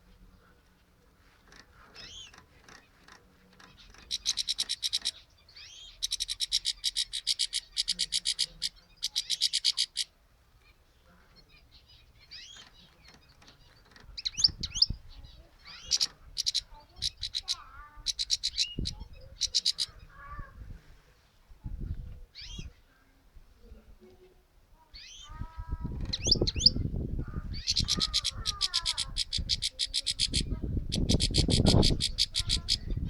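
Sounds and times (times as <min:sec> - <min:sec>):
goldfinch calling and singing: 0:03.6 - 0:10.1, 0:11.5 - 0:20.0, 0:26.0 - 0:26.8, 0:27.6 - 0:33.0.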